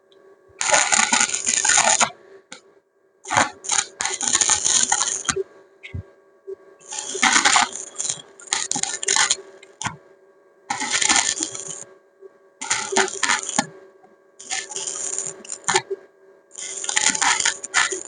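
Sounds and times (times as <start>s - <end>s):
steady low hum: 0.0s - 18.0s
arc welding crackling: 0.6s - 2.1s, 3.3s - 6.0s, 6.8s - 10.0s, 10.7s - 11.8s, 12.6s - 13.7s, 14.4s - 18.0s.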